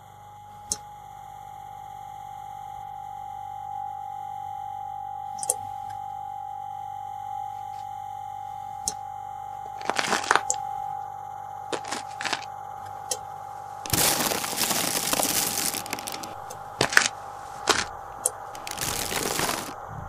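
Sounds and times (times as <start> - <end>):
sharp cracks and knocks: 13.9 - 18.0.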